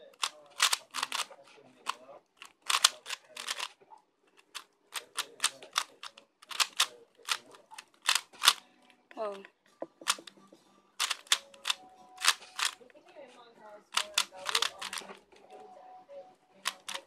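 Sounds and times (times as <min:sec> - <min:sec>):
plastic puzzle cube clicking: 0:00.1 - 0:03.7, 0:04.4 - 0:08.6, 0:10.0 - 0:10.3, 0:11.0 - 0:12.8, 0:13.9 - 0:15.1, 0:16.6 - 0:17.0.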